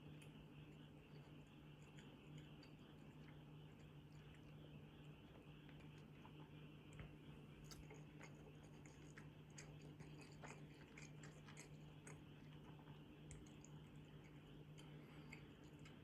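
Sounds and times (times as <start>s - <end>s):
low steady hum: 0.0s - 16.0s
faint clicks and taps: 0.1s - 16.0s.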